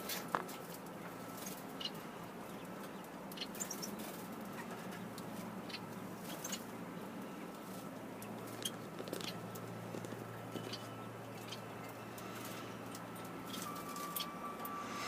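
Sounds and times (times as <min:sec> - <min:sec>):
small birds chirping: 0:00.0 - 0:15.0
steady background hiss: 0:11.5 - 0:15.0.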